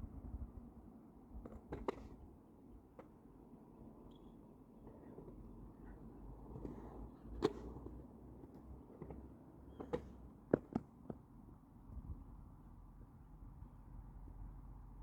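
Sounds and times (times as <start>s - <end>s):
skateboard rumbling: 4.8s - 11.3s
skateboard clacks and knocks: 6.6s - 11.3s.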